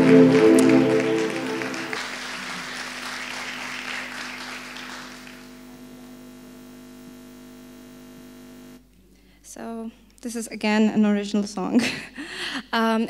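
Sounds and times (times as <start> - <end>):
audience applause: 0.0 - 5.6
electrical hum: 0.0 - 8.8.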